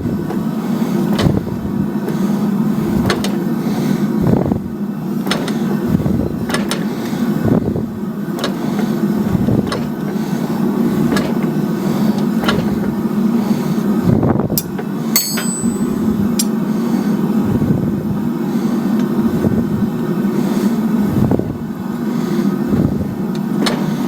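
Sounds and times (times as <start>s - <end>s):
metal-on-metal hammer strikes: 14.6s - 16.6s
steady low hum: 14.6s - 16.8s.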